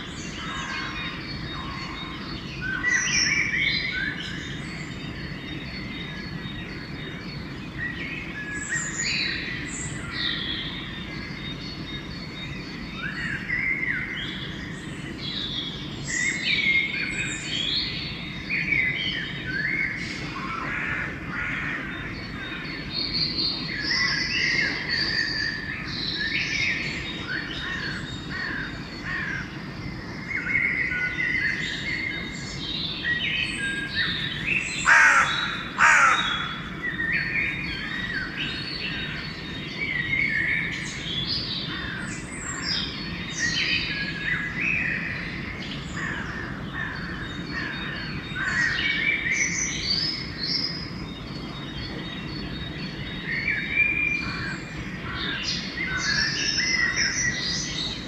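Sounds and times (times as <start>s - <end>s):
songbirds chirping and whistling: 0.0s - 58.0s
crow cawing: 34.8s - 36.6s.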